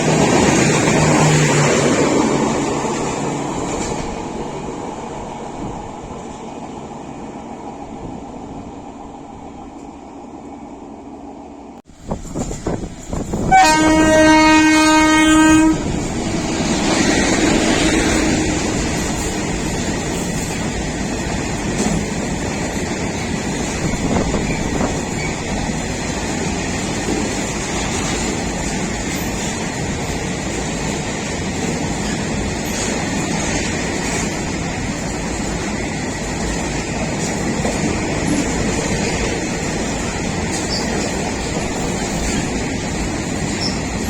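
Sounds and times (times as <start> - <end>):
train wheels rumbling on rails: 0.0 - 44.0
train horn blast: 13.4 - 16.0.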